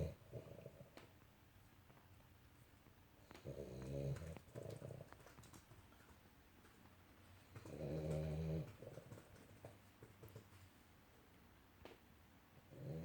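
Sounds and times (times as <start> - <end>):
dog snoring: 3.4 - 5.2, 7.5 - 9.2, 12.7 - 13.0.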